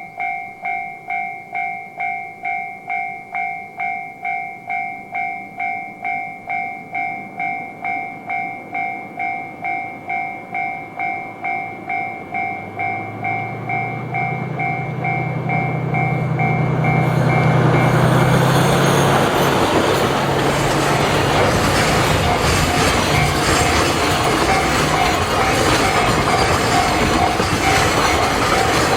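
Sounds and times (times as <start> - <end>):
level crossing bell dinging: 0.0 - 28.9
freight train wheel noise: 8.2 - 28.9
diesel locomotive drone: 9.0 - 28.9.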